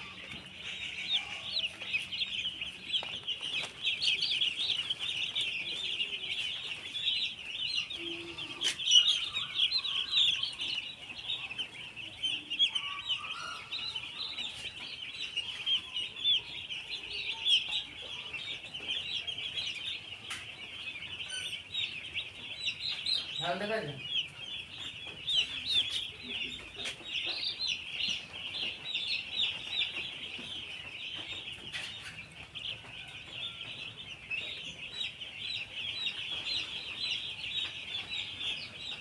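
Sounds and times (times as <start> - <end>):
chickens chirping and clucking: 0.0 - 39.0.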